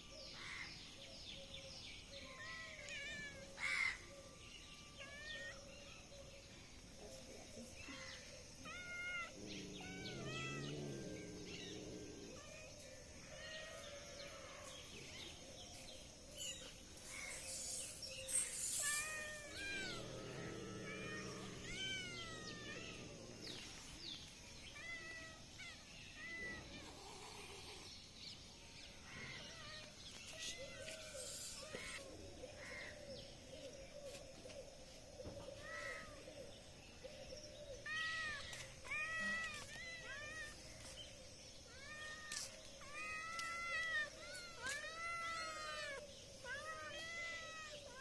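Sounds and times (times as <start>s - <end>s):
cat meowing: 8.6s - 11.8s, 18.8s - 23.6s.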